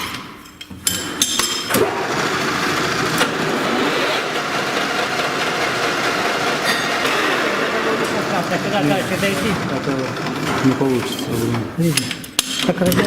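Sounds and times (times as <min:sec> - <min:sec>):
machine running steadily: 0:01.2 - 0:12.2.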